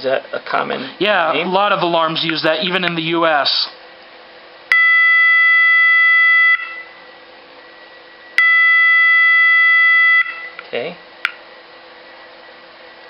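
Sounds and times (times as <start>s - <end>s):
fire alarm steady electronic tone: 4.7s - 7.0s, 8.4s - 10.6s.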